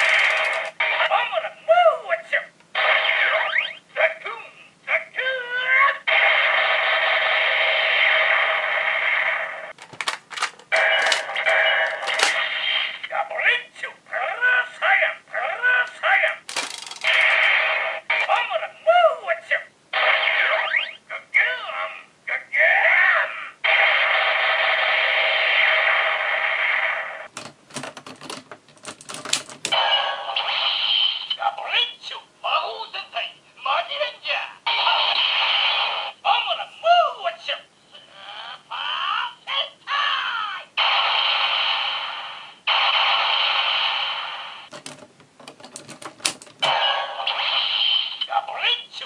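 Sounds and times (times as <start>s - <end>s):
plastic toy clicks and clatter: 0.0s - 0.8s, 9.8s - 12.4s, 16.4s - 17.3s, 27.3s - 29.7s, 44.7s - 46.7s
toy electronic sound effect: 2.8s - 3.8s, 20.0s - 21.0s.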